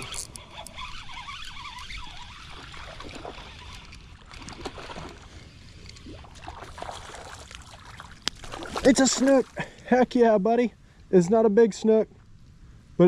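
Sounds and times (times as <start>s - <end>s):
light water splashing: 0.0s - 9.9s.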